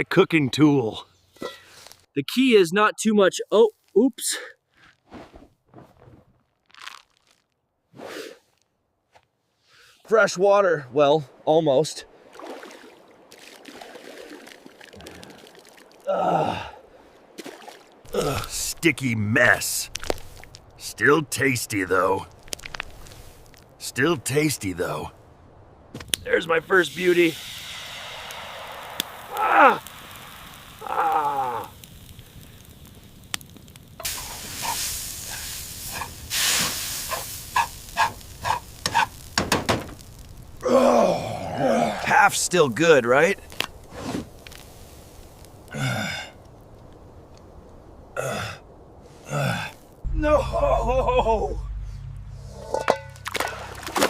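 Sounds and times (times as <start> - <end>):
water pouring and trickling: 12.2 - 18.6, 52.6 - 54.0
voiced sigh: 15.0 - 17.0, 40.6 - 42.1, 45.7 - 46.4, 49.2 - 52.1
pancake batter sizzling: 27.0 - 40.7.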